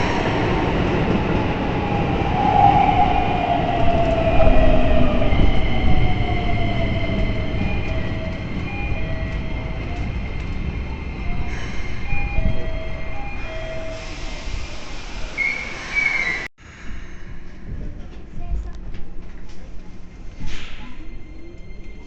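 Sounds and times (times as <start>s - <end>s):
train running rumble: 0.0s - 15.2s.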